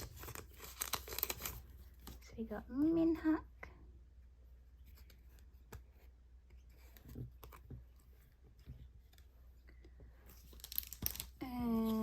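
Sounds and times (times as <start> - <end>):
plastic sleeves rustling and clicking: 0.0 - 2.3, 4.8 - 12.0.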